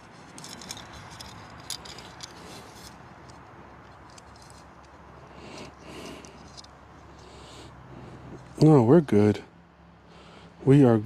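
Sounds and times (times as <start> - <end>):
faint metallic clicks and scratches: 0.0 - 7.3.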